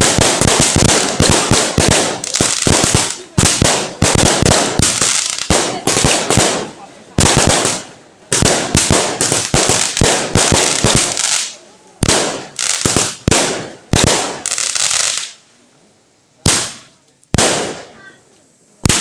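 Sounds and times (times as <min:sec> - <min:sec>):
firecrackers banging and crackling: 0:00.0 - 0:15.4, 0:16.4 - 0:19.0.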